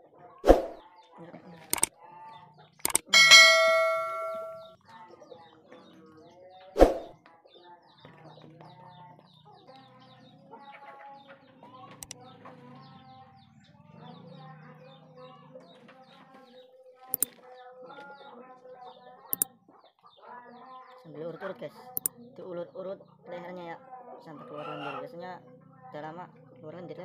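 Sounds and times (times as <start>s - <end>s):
click: 2.8s - 3.7s, 17.2s - 17.4s
metallic ding ringing: 3.0s - 4.6s
chickens clucking and chirping: 24.3s - 25.2s.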